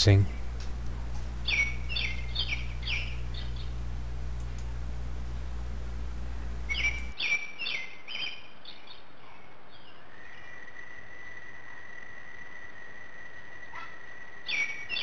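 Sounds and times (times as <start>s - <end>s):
birds chirping: 0.0s - 8.2s.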